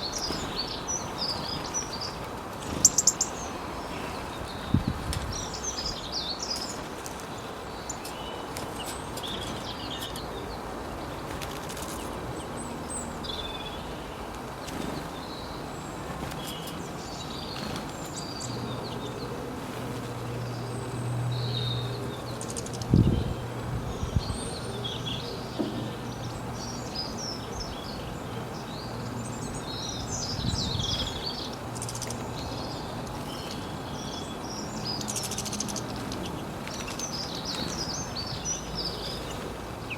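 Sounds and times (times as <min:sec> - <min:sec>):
small birds chirping: 0:00.0 - 0:39.9.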